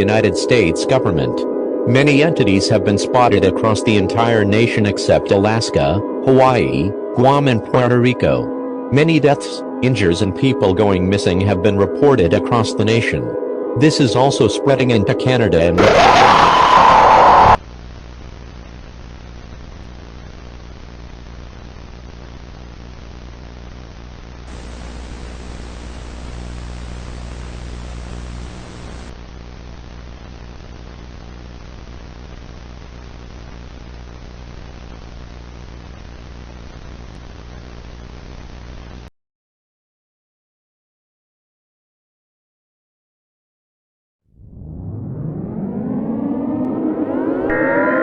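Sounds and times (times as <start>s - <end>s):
static hiss with low hum: 15.9s - 39.1s.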